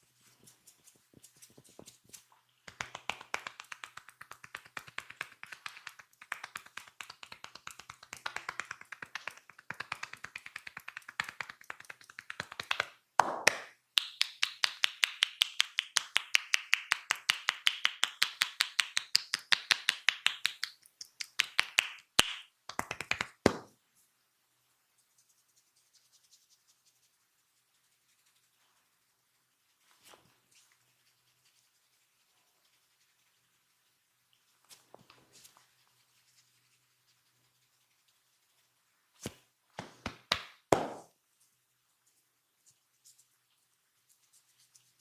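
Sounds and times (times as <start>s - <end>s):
hands tapping on body: 2.6s - 23.8s, 39.2s - 41.1s.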